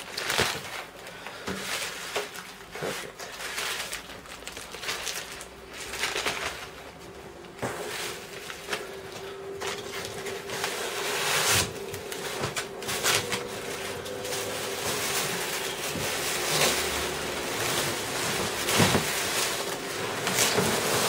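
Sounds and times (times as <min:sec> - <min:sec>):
plastic and cardboard rustling: 0:00.0 - 0:21.0
steady low hum: 0:04.8 - 0:21.0.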